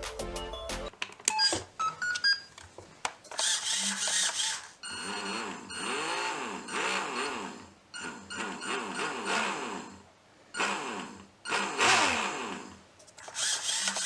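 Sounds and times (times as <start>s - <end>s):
electric motor and propeller whirring: 3.4s - 10.0s, 10.6s - 14.0s.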